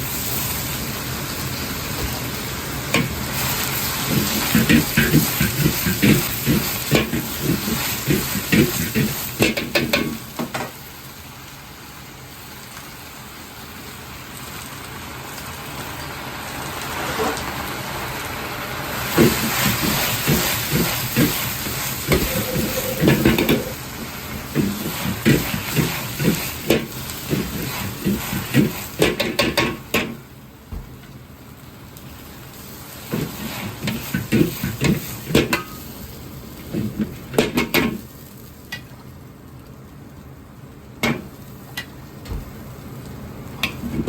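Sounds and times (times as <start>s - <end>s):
food sizzling: 0.0s - 44.0s
metal ladle scraping a wok: 22.1s - 23.8s.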